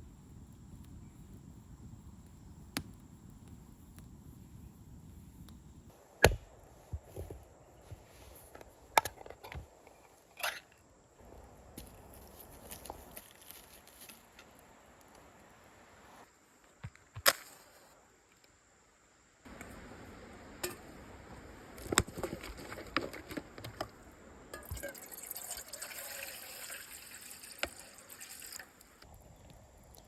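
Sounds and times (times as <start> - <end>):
liquid pouring: 24.6 - 28.9.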